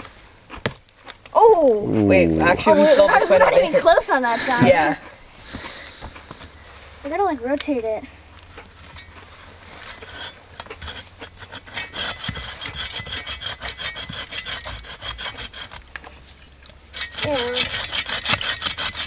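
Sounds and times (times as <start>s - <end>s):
hand saw cutting log: 8.5s - 16.1s, 16.9s - 19.0s.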